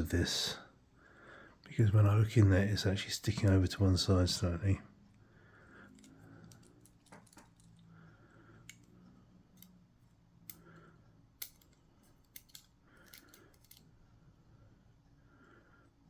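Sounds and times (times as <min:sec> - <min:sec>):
small metallic lock clicks: 0:11.4 - 0:13.9.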